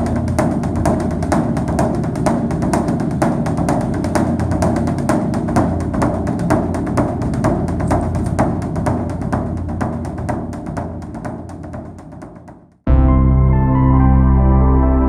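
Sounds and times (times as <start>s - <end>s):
sustained low tone: 12.9s - 15.0s.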